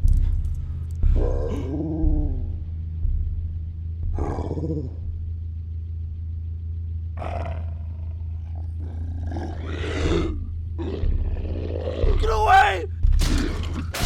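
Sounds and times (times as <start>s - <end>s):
low engine drone: 0.0s - 12.3s
werewolf growling and roaring: 8.9s - 12.9s.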